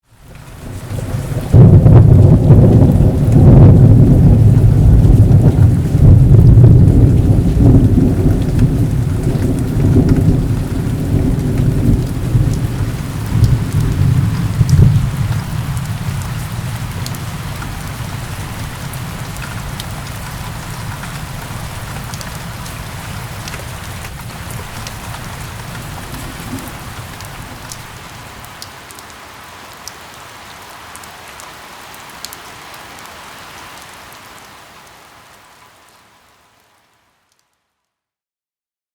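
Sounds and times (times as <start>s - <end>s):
steady rain: 0.0s - 37.8s
raindrops ticking: 0.2s - 30.2s
thunder rumbling: 0.3s - 28.5s.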